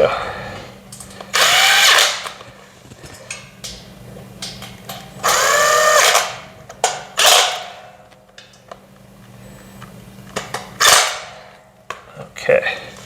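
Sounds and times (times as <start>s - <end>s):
impact driver whine: 1.3s - 2.5s, 5.2s - 6.5s, 10.5s - 11.5s
parts being handled clicks: 4.4s - 5.4s.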